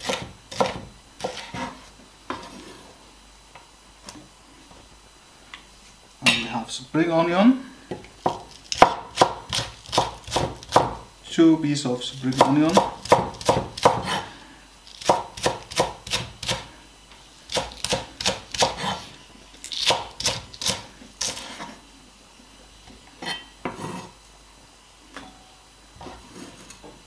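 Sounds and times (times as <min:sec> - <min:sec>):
knife chopping on cutting board: 0:00.0 - 0:01.8, 0:08.2 - 0:11.0, 0:12.3 - 0:14.2, 0:15.0 - 0:16.7, 0:17.5 - 0:19.0.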